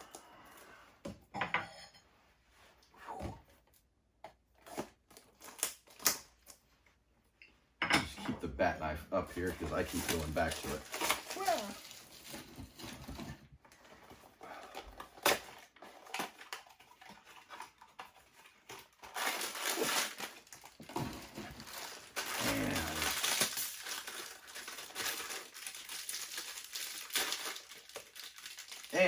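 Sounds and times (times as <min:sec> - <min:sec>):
foil bag crinkling: 0:09.3 - 0:12.9, 0:14.6 - 0:29.0.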